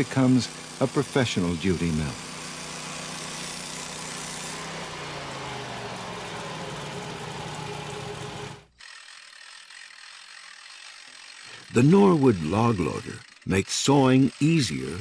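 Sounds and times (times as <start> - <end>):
sawmill engine running: 0.0 - 15.0.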